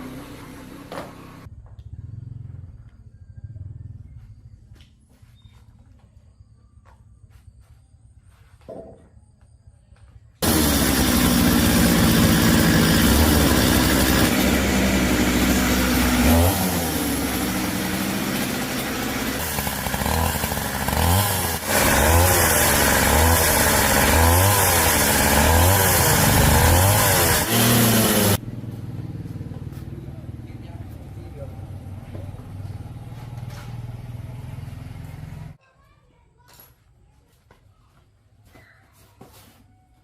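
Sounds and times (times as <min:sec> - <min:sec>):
chainsaw engine revving: 0:10.4 - 0:28.4.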